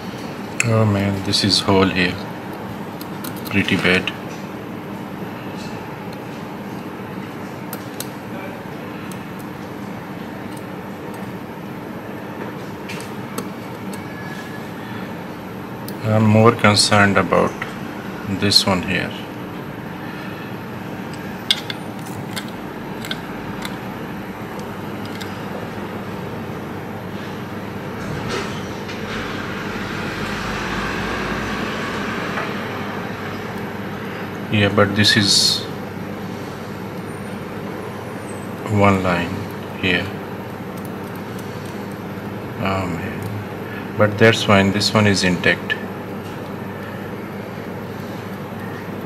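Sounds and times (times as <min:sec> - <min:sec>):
steady background hum: 0:00.0 - 0:49.0
low hum: 0:17.1 - 0:38.5.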